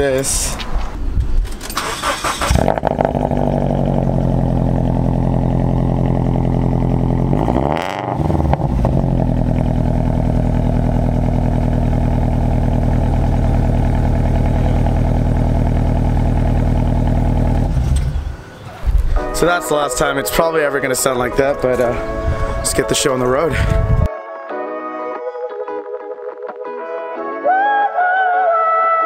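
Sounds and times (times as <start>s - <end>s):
car engine idling: 2.3s - 19.1s.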